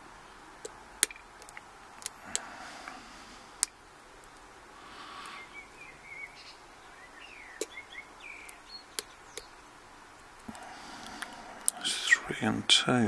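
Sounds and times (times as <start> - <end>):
small bird chirping: 4.9 - 9.8.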